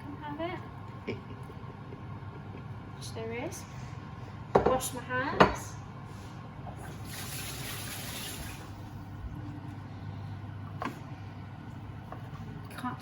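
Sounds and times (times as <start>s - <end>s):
steady low hum: 0.0s - 7.1s, 8.4s - 13.0s
tap water running: 6.7s - 9.1s.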